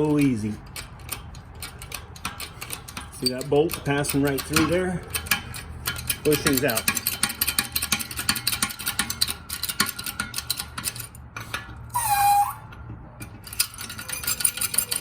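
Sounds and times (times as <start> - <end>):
metal parts clinking: 0.0 - 11.6, 13.2 - 15.0
short squeak: 11.9 - 12.8.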